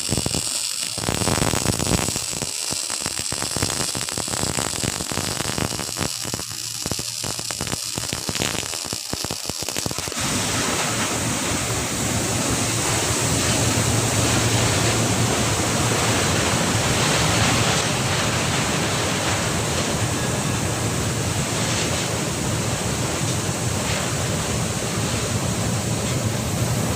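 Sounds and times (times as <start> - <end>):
welding arc crackling and hissing: 0.0 - 26.9
low hum: 10.3 - 26.9.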